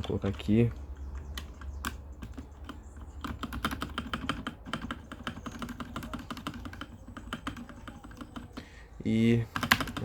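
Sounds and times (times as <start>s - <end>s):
mechanical keyboard keys clicking: 1.2s - 8.5s, 9.6s - 10.0s.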